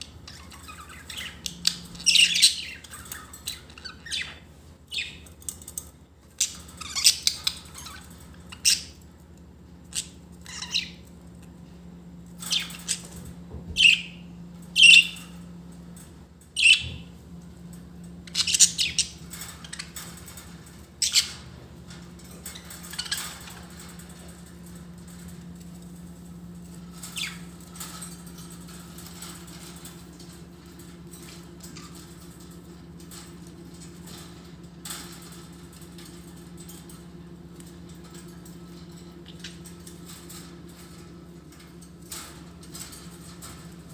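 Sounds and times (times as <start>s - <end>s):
steady low hum: 0.0s - 43.9s
budgerigars chirping and squawking: 0.2s - 5.6s, 6.4s - 9.0s, 9.9s - 11.1s, 12.4s - 14.2s, 14.8s - 15.3s, 16.6s - 17.0s, 18.3s - 20.4s, 21.0s - 21.5s, 22.4s - 24.1s, 26.6s - 30.3s.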